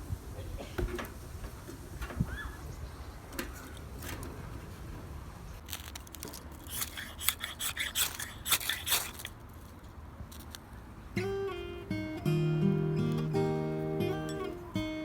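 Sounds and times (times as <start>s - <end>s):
low steady background noise: 0.0s - 15.0s
crisp snips and scrapes: 5.6s - 10.6s.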